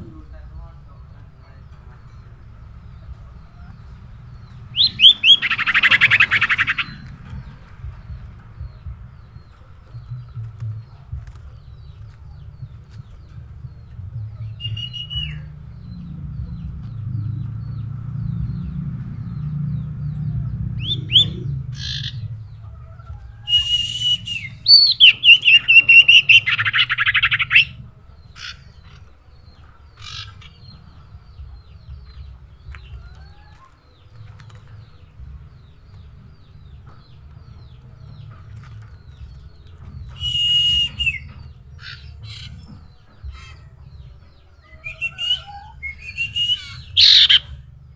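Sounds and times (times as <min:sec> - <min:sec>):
bird rapid chattering notes: 0:00.0 - 0:31.3, 0:36.6 - 0:47.8
low rumble: 0:00.0 - 0:47.9
bird high whistles: 0:04.8 - 0:07.0, 0:14.6 - 0:15.5, 0:23.4 - 0:27.7, 0:40.1 - 0:42.5, 0:44.7 - 0:47.5.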